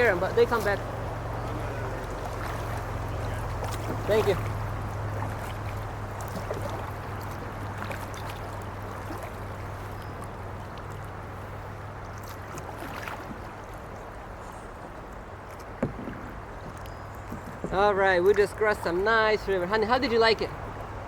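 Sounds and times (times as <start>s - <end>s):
small splashes and knocks: 0.0s - 19.0s
river water rushing: 0.0s - 21.0s.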